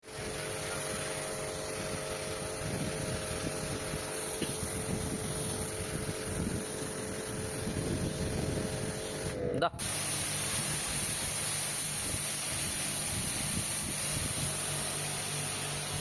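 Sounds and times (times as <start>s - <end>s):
motor-driven pump humming: 0.0s - 10.5s, 14.2s - 16.0s
rushing hiss: 0.0s - 16.0s.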